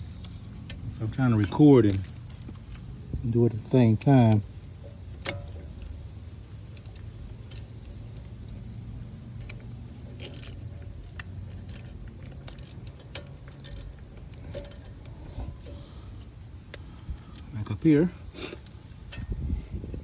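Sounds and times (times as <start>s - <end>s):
low steady hum: 0.0s - 20.0s
palm ratchet clicking: 3.5s - 17.5s.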